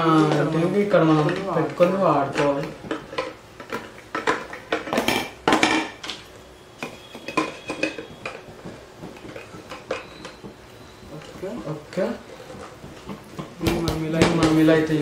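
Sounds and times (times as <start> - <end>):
plastic parts clattering: 0.0 - 6.2
vacuum attachments clicking and knocking: 0.0 - 15.0.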